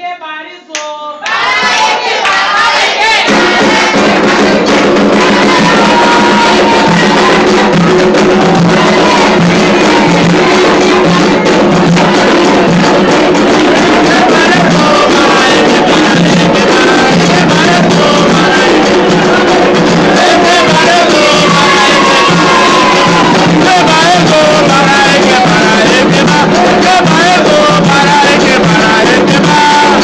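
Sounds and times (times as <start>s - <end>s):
group singing: 1.1s - 30.0s
hand drums playing: 1.5s - 30.0s.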